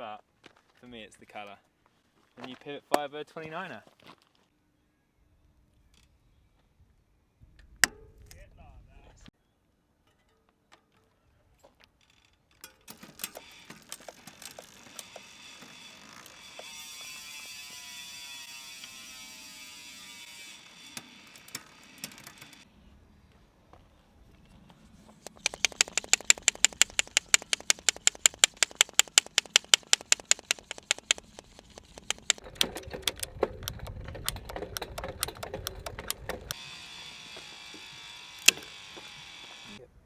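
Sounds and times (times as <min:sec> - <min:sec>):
ratcheting clicks: 0:25.2 - 0:36.6, 0:38.4 - 0:38.7.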